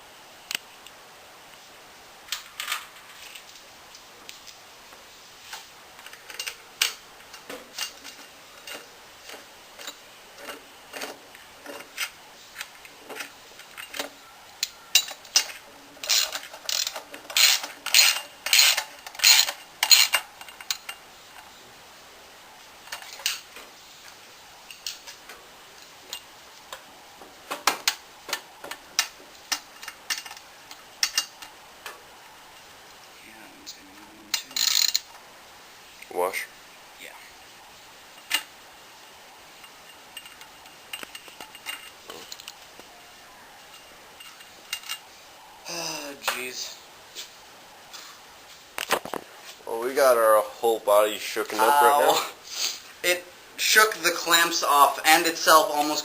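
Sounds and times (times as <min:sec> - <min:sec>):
metallic clicks of hand tools: 0:13.6 - 0:21.0.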